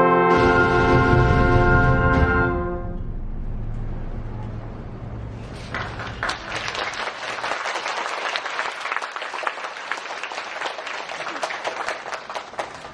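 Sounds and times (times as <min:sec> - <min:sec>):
band's low chord: 0:00.2 - 0:04.3
audience applauding: 0:05.6 - 0:12.9.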